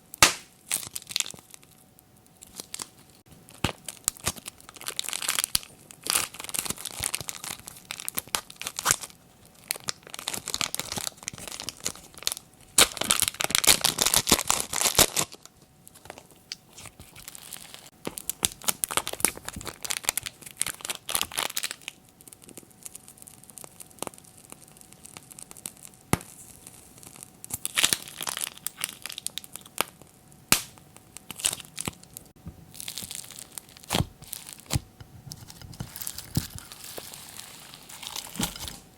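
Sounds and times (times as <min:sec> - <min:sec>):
slime squished crackling: 0:27.1 - 0:38.9.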